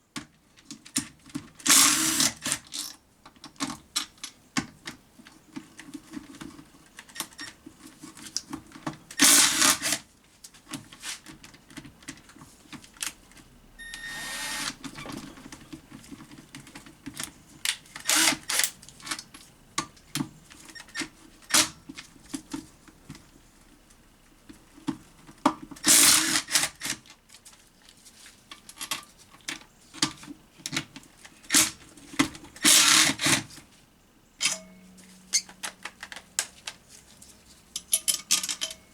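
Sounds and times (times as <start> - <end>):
metal parts clicking and clattering: 37.7 - 38.8.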